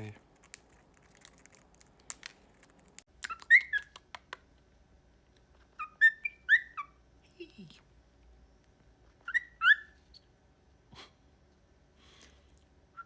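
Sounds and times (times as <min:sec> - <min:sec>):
cockatiel chirping: 0:03.2 - 0:04.0, 0:05.8 - 0:07.0, 0:09.2 - 0:10.3.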